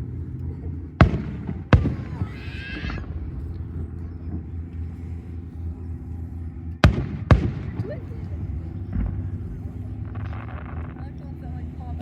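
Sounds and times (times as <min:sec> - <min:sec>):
steady low hum: 0:00.0 - 0:12.0
fireworks bursting with echo: 0:01.0 - 0:04.7, 0:06.8 - 0:08.1
high squeal: 0:01.9 - 0:04.8.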